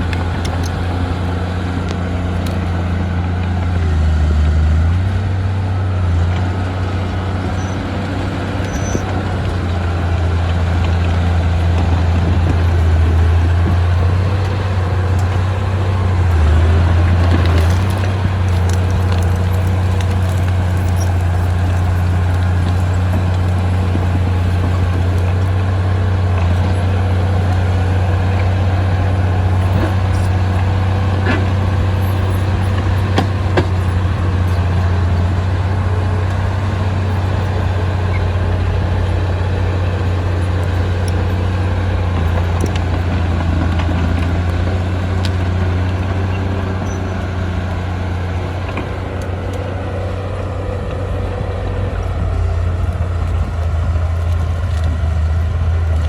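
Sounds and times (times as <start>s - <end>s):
diesel machinery engine running: 0.0s - 56.0s.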